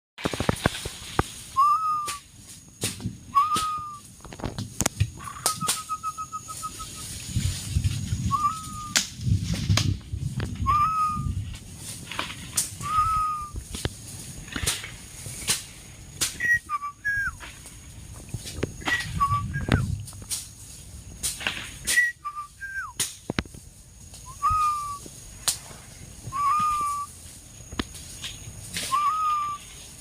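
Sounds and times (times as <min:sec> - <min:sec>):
low rustling: 0:00.2 - 0:30.0
bird whistled calls: 0:01.6 - 0:02.2, 0:03.3 - 0:04.0, 0:05.2 - 0:07.2, 0:08.2 - 0:09.0, 0:10.6 - 0:11.4, 0:12.8 - 0:13.6, 0:16.4 - 0:17.4, 0:18.8 - 0:19.9, 0:21.9 - 0:23.0, 0:24.3 - 0:25.0, 0:26.3 - 0:27.1, 0:28.8 - 0:29.7.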